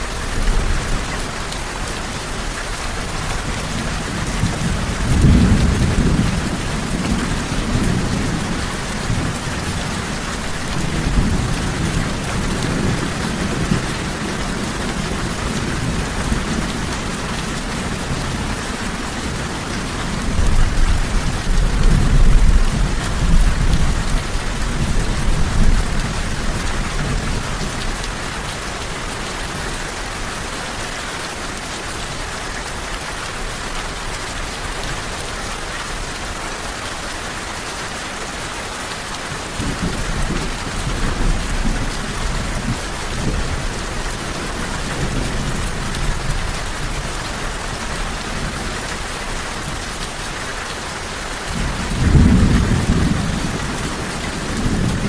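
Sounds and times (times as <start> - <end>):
heavy rain hissing: 0.0 - 55.0
thunder rumbling: 3.4 - 28.0, 51.5 - 55.0.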